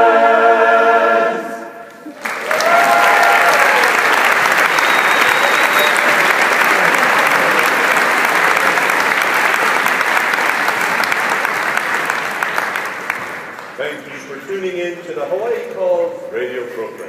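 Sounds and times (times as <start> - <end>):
audience applauding: 1.9 - 14.8.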